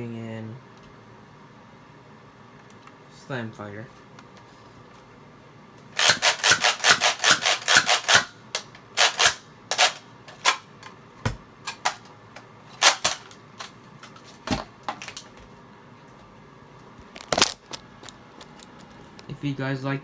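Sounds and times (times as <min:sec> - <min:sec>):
toy blaster clacking: 0:06.0 - 0:08.3, 0:09.0 - 0:10.6, 0:12.8 - 0:13.4.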